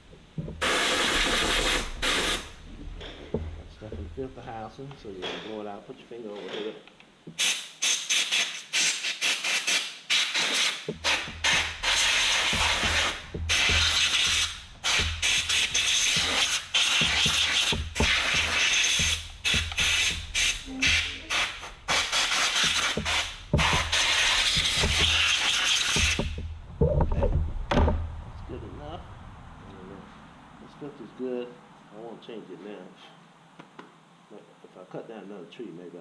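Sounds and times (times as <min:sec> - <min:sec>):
hissing gusts of air: 0:00.6 - 0:02.7.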